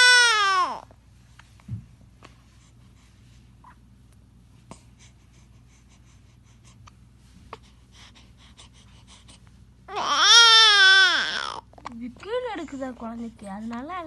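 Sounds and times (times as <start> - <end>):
baby crying: 0.0 - 0.8, 9.9 - 11.7
baby breathing softly: 1.4 - 3.6, 4.6 - 9.6.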